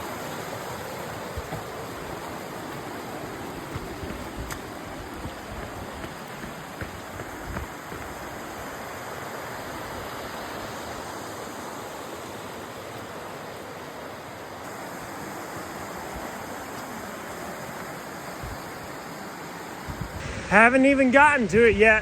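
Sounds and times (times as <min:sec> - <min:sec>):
waterfall roaring: 0:00.0 - 0:22.0.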